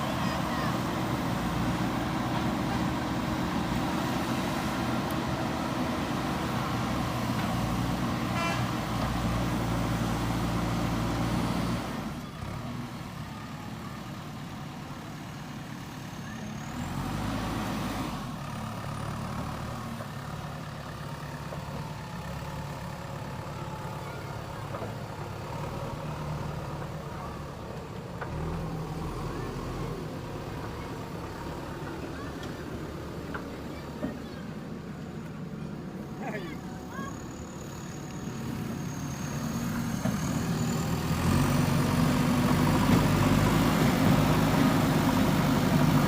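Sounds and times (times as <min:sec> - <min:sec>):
heavy diesel engine running: 0:00.0 - 0:46.0.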